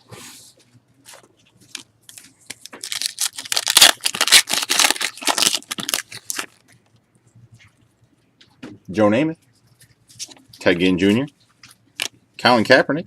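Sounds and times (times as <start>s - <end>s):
foil wrapper tearing and crinkling: 2.5s - 6.6s.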